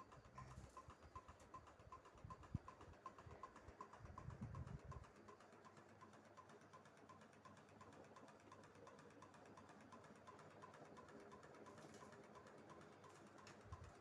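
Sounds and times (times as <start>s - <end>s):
ceiling fan motor hum: 0.0s - 5.5s, 11.0s - 14.0s.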